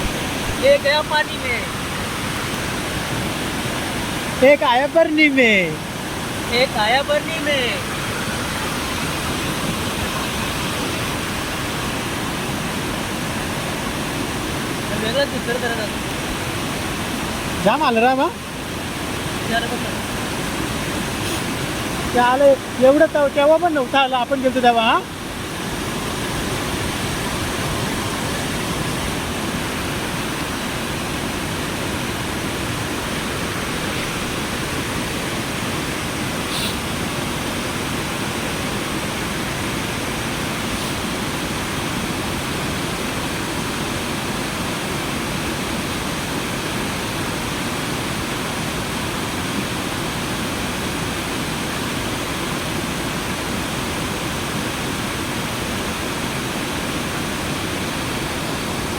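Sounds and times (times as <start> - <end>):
steady rushing noise: 0.0 - 46.3.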